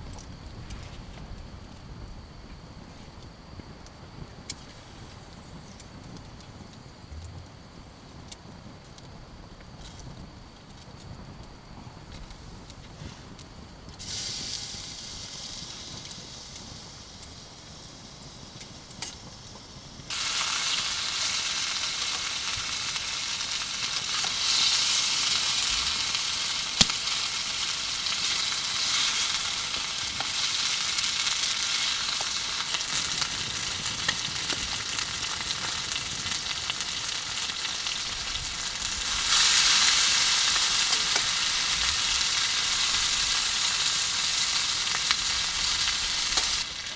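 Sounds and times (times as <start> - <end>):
food sizzling in oil: 14.0 - 46.9.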